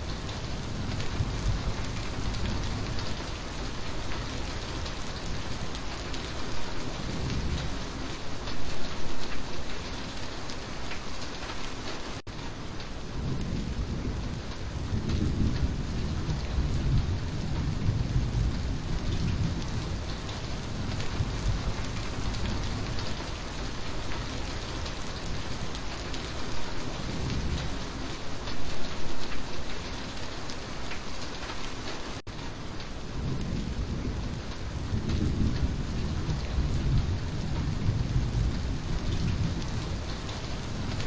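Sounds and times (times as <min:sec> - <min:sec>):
rolling thunder: 0:00.0 - 0:08.2, 0:13.0 - 0:28.2, 0:33.0 - 0:41.0
heavy rain: 0:00.0 - 0:41.0.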